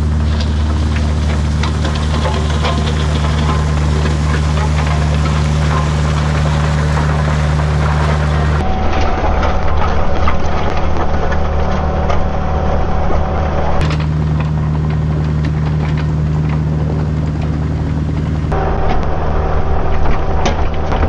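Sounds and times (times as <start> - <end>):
bucket clicking and knocking on gravel: 0.0 - 8.6
diesel engine running: 0.0 - 21.0.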